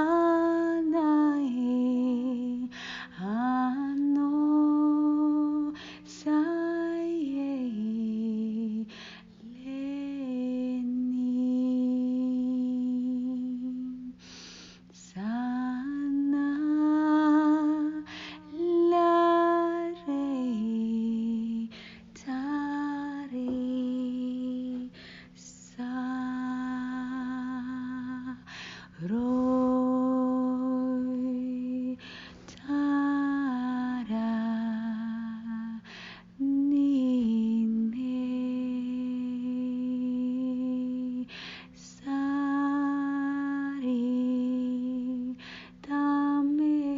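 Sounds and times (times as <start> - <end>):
breaths: 2.7 - 3.2, 5.7 - 6.1, 8.9 - 9.4, 14.2 - 15.0, 18.0 - 18.5, 21.7 - 22.1, 24.9 - 25.4, 28.4 - 29.0, 32.0 - 32.6, 35.8 - 36.4, 41.3 - 41.8, 45.4 - 45.8.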